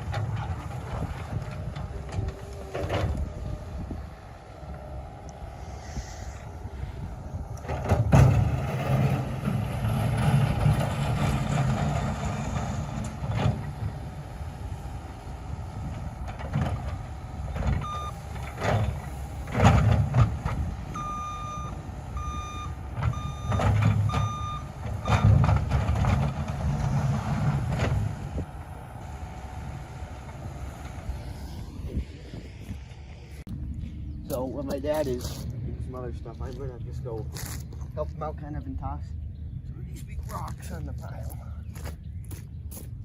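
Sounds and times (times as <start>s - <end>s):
heavy equipment engine: 0.0s - 41.7s
knocks and clanks: 7.6s - 13.8s
backup alarm beeping: 17.8s - 18.3s, 20.9s - 25.4s.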